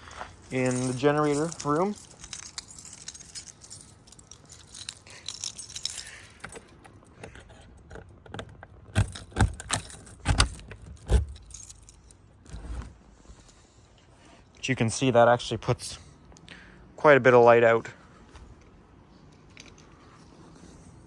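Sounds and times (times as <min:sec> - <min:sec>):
keys jangling: 0:00.0 - 0:14.1, 0:19.2 - 0:20.6.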